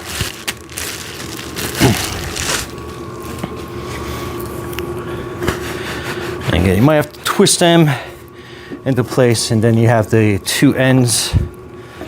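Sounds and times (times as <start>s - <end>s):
steady hum: 0.0s - 12.0s.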